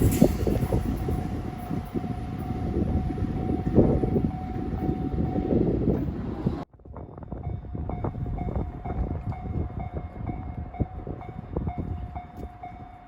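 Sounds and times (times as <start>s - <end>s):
crossing alarm ringing: 0.0s - 5.7s
train wheels rumbling: 0.0s - 6.6s.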